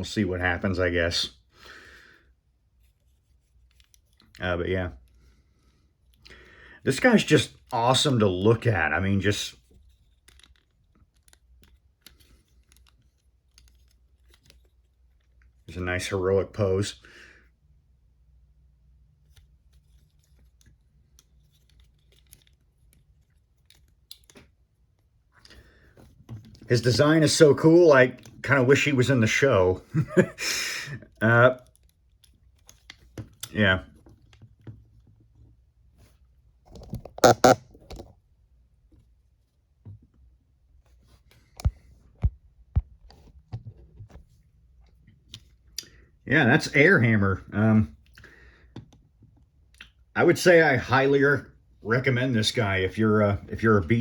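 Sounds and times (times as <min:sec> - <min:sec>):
plastic figure clicks: 0:37.2 - 0:38.0.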